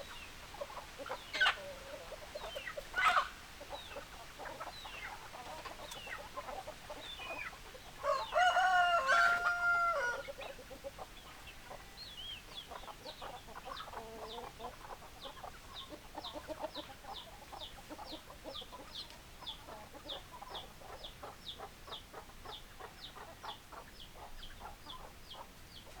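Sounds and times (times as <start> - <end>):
hens clucking: 0.0 - 26.0
rooster crowing: 8.0 - 10.3.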